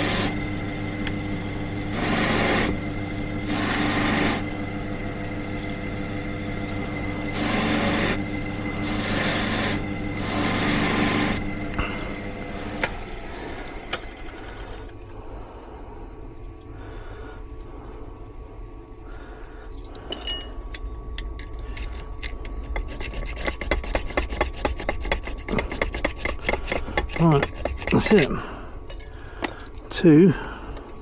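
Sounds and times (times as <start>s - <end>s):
key being filed by hand: 0.0s - 14.5s, 21.4s - 29.8s
bench buffing motor running: 0.0s - 15.0s, 22.5s - 28.6s.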